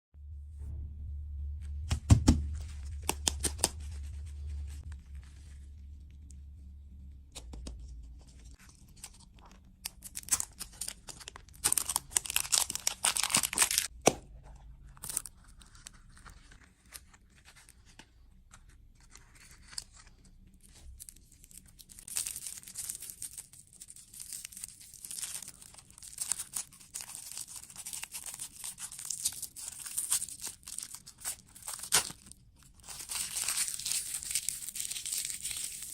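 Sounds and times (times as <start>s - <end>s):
low hum: 0.1s - 9.8s
plastic packaging crinkling: 8.6s - 13.9s, 20.6s - 35.9s.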